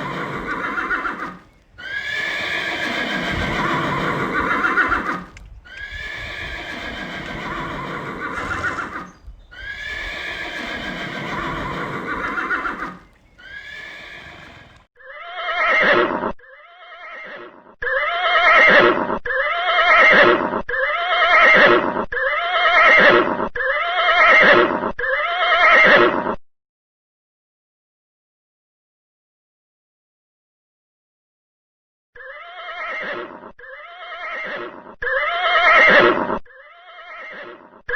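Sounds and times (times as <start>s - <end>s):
horses whinnying: 0.0s - 16.2s, 32.2s - 37.8s.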